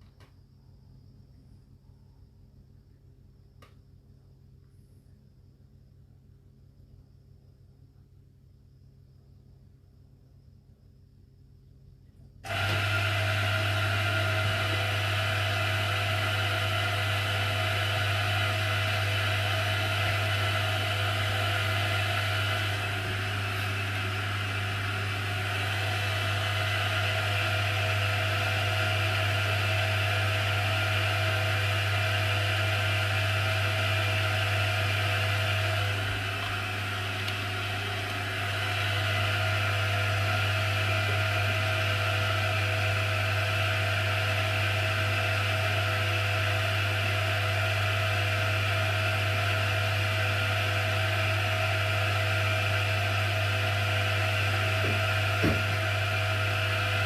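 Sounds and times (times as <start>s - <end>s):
water pump humming and whining: 12.4s - 57.0s.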